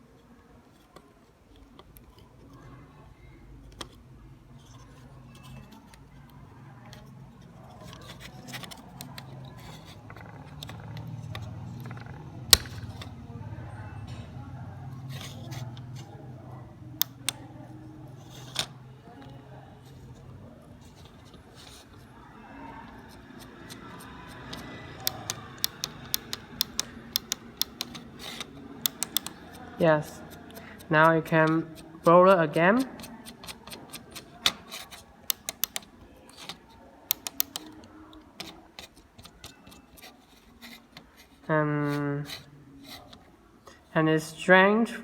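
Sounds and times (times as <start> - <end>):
plastic parts clicking and scraping: 4.6 - 13.2, 18.1 - 22.1, 22.9 - 43.3.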